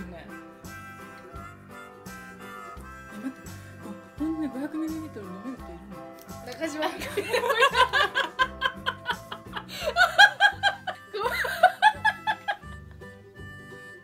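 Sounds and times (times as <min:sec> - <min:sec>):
background music: 0:00.0 - 0:14.0
woman laughing: 0:06.8 - 0:12.8.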